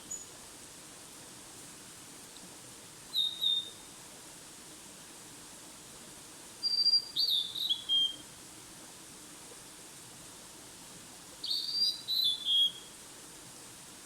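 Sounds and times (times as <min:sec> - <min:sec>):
faint steady hiss: 0:00.0 - 0:14.0
songbird whistling: 0:03.1 - 0:03.8, 0:06.6 - 0:08.2, 0:11.4 - 0:12.9.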